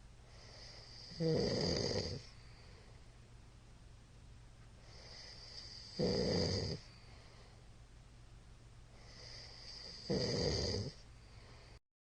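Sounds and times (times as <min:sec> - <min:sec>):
man snoring: 0:00.6 - 0:02.3, 0:05.0 - 0:06.9, 0:09.1 - 0:11.0.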